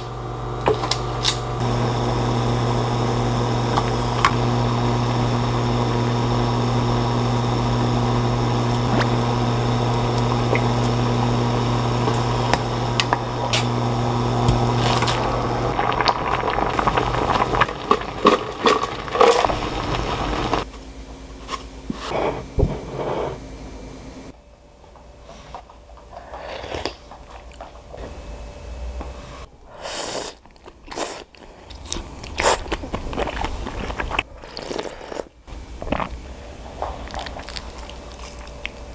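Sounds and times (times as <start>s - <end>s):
kitchen appliance motor humming: 0.0s - 20.7s
person crunching and chewing: 30.2s - 36.2s.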